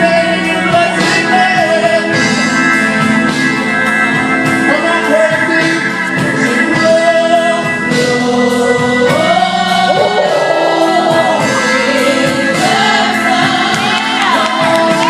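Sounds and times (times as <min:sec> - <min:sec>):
praise team singing: 0:06.4 - 0:15.0
held instrumental chords: 0:09.8 - 0:13.7
wavering sung melody: 0:09.9 - 0:12.0.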